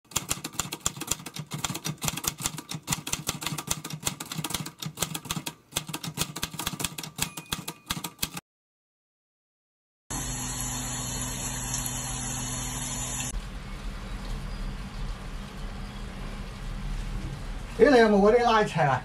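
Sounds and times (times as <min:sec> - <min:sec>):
rapid irregular clicking: 0:00.1 - 0:08.4.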